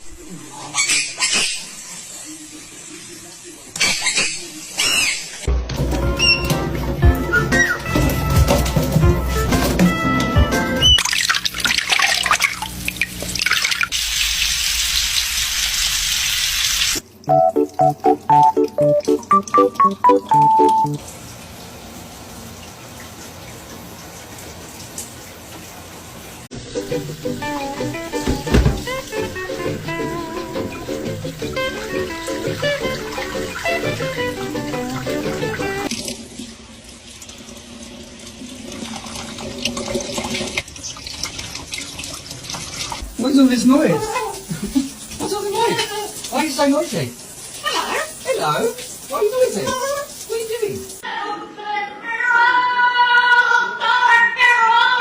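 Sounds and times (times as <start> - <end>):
water splashing and dripping: 5.4 - 51.0
tap water spraying: 5.7 - 21.3, 26.5 - 51.0
small water splashes: 11.0 - 14.0
plucked guitar tune: 17.3 - 21.0, 26.7 - 35.9
short musical notes: 17.3 - 21.0.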